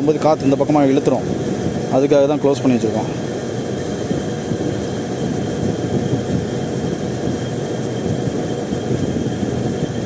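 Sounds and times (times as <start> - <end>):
air conditioner outdoor unit running: 0.0 - 10.0.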